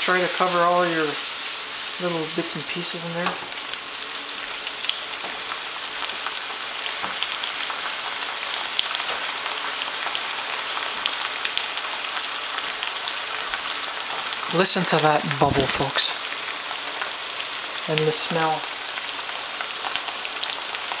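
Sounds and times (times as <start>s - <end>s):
sauce sizzling and bubbling in pan: 0.0s - 21.0s.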